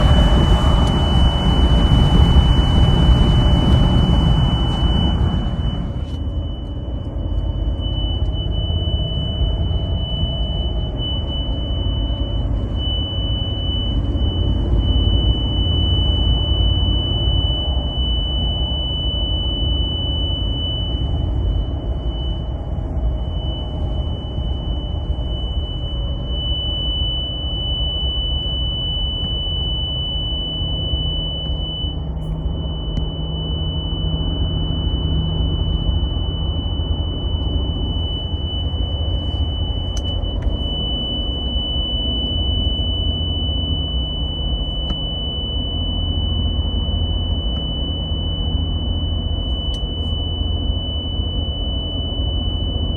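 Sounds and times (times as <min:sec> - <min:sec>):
truck driving rumble: 0:00.0 - 0:07.0
piercing high-pitched tone: 0:00.0 - 0:52.9.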